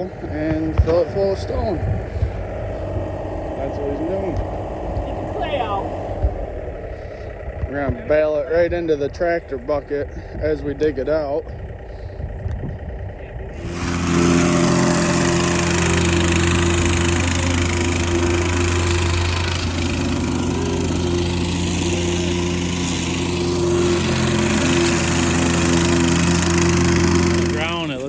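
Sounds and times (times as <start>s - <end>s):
engine running steadily: 0.0s - 28.0s.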